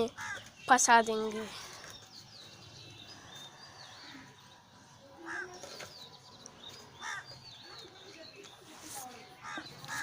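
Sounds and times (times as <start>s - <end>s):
small birds chirping: 0.0s - 10.0s
crow cawing: 0.1s - 0.5s, 5.2s - 5.6s, 7.0s - 7.3s, 9.4s - 10.0s.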